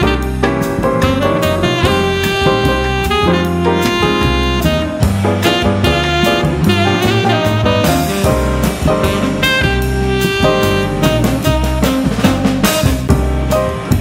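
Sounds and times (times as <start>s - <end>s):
drum kit steady beat: 0.0s - 14.0s
saxophone: 0.0s - 14.0s
upbeat jazz instrumental: 0.0s - 14.0s.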